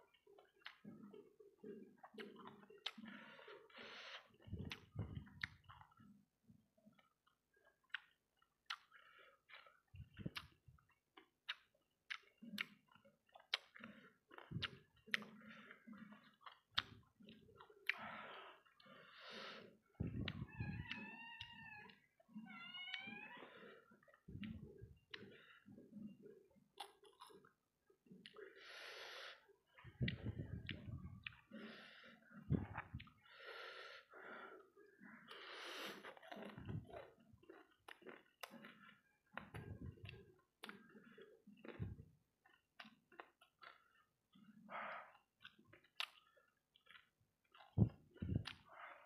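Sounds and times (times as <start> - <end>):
person chewing: 0.0 - 21.1, 23.0 - 49.0
breaths: 3.0 - 5.1, 8.9 - 9.8, 17.9 - 20.2, 23.4 - 24.0, 28.4 - 29.6, 31.4 - 36.8.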